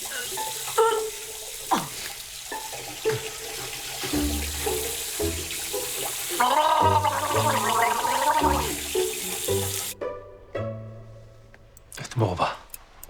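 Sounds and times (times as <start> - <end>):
tap water running into sink: 0.0 - 10.0
water drops plopping: 0.4 - 10.0.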